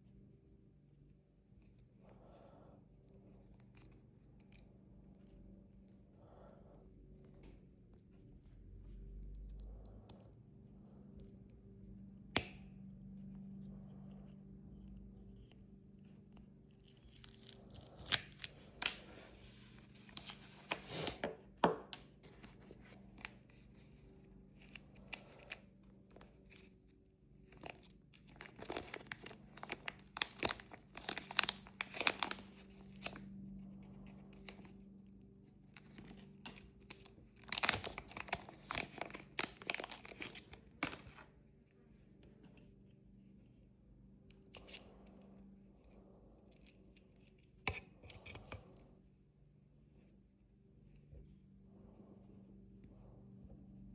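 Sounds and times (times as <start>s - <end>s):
low steady hum: 0.0s - 53.9s
scratchy crinkling handling noise: 15.7s - 34.9s, 35.7s - 42.8s.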